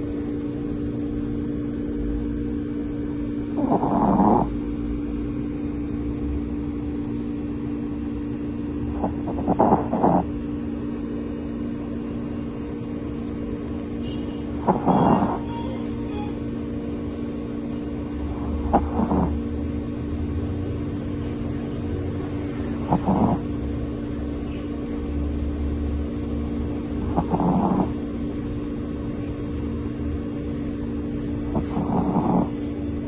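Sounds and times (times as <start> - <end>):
steady background hum: 0.0 - 33.0
dog snoring: 3.5 - 4.6, 8.8 - 10.3, 14.5 - 15.6, 18.3 - 19.4, 22.7 - 23.6, 27.0 - 28.0, 31.5 - 32.6.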